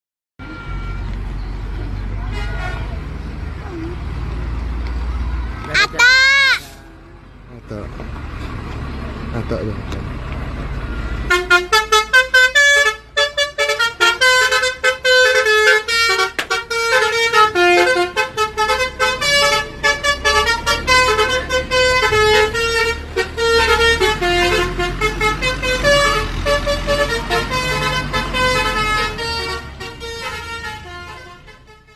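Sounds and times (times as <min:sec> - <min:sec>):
multi-tone bus horn melody: 0:00.4 - 0:01.2, 0:02.2 - 0:03.0, 0:05.8 - 0:06.8, 0:11.1 - 0:31.9.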